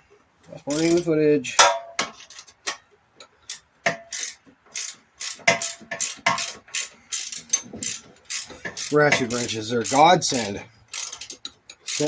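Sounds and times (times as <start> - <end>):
ratchet wrench clicking: 0.7 - 1.1, 3.5 - 12.0.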